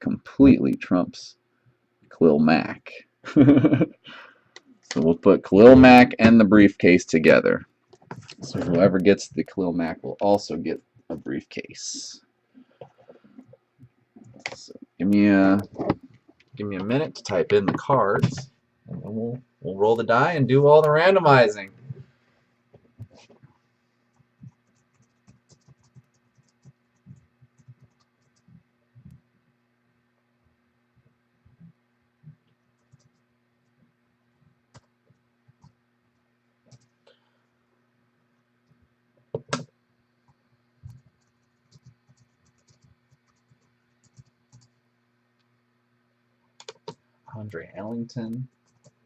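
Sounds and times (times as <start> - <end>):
faint steady hum: 0.0 - 49.0
keyboard typing: 14.2 - 18.5, 24.1 - 29.2, 32.5 - 33.2, 34.7 - 35.8, 36.7 - 37.0, 40.8 - 44.8, 46.6 - 47.6, 48.2 - 49.0.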